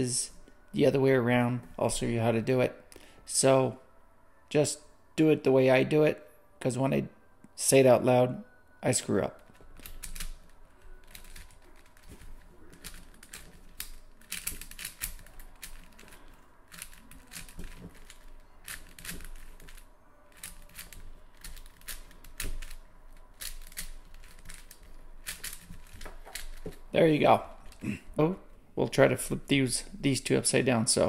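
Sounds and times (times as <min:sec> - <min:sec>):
puzzle cube clicking: 0:09.5 - 0:10.4, 0:11.0 - 0:26.9.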